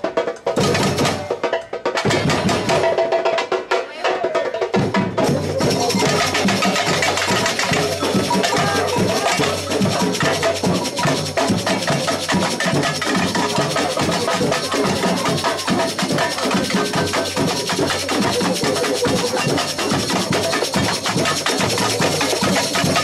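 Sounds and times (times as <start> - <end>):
samba percussion drumming: 0.0 - 23.0
sharp wood-block strikes: 4.8 - 23.0.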